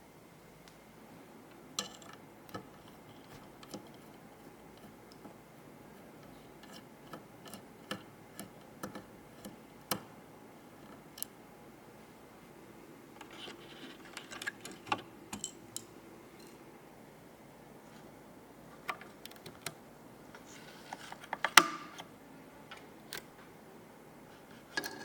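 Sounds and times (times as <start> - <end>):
hardware clicks and taps: 6.2 - 10.1.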